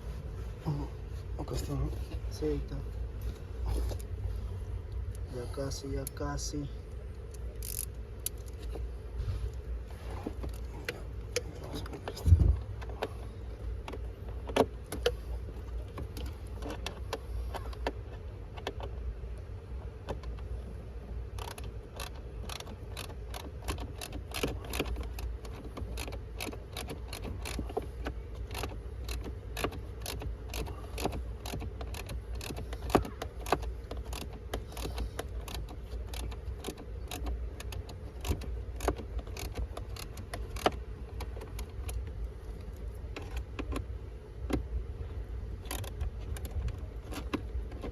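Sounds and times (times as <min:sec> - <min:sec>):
low steady hum: 0:00.0 - 0:47.9.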